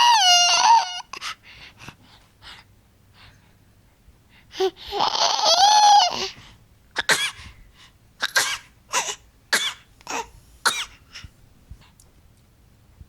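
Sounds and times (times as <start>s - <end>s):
baby squealing: 0.0s - 1.2s, 5.0s - 6.3s
baby shrieking: 0.0s - 1.3s, 4.9s - 6.3s.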